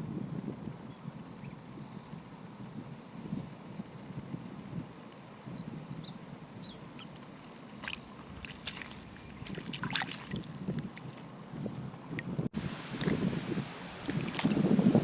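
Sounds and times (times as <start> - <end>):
shallow water sloshing and splashing: 6.9 - 11.3, 13.9 - 14.7.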